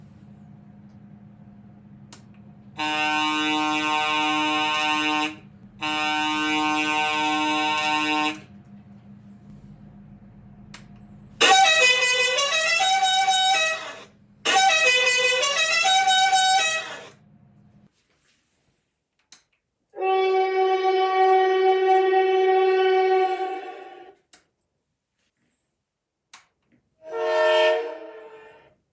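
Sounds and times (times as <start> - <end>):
low electrical hum: 0.0 - 28.9
electronic horn blast: 2.7 - 8.7, 11.3 - 17.2, 20.0 - 24.3, 27.0 - 28.8
run of shifting electronic notes: 9.5 - 17.5.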